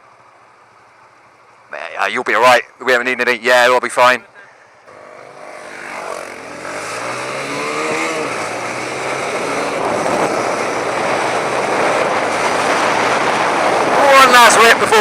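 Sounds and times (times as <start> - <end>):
motorcycle engine revving: 4.8 - 14.0
wind rush on microphone: 7.7 - 15.0.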